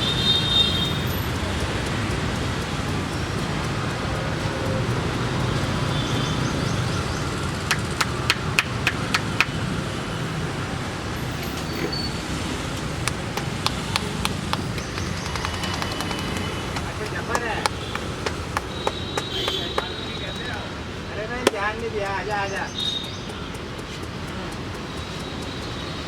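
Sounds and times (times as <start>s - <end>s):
street traffic: 0.0s - 26.0s
sharp hand slaps: 7.7s - 9.6s, 13.1s - 20.0s, 21.4s - 21.7s.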